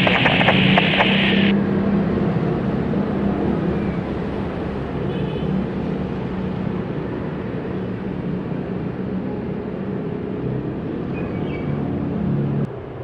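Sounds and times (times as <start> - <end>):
jet engine rumble: 0.0 - 1.5.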